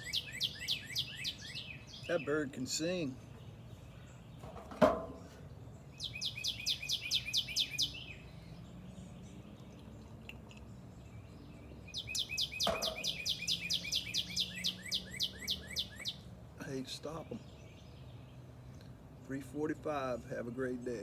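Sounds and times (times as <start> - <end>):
songbird singing high notes: 0.0 - 3.2, 6.0 - 8.4, 11.9 - 16.3
sharp knock: 12.7 - 13.2.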